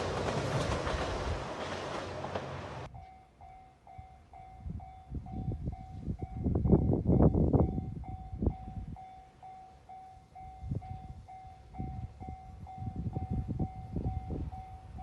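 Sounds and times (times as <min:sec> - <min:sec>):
train wheels clattering: 0:00.0 - 0:02.9.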